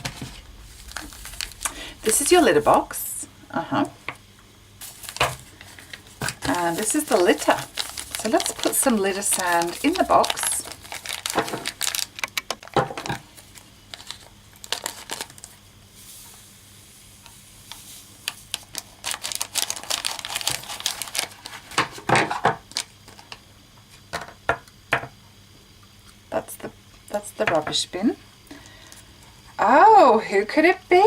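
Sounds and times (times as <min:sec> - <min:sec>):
litter sand pouring: 0:00.0 - 0:03.3, 0:04.8 - 0:12.1, 0:13.4 - 0:21.4.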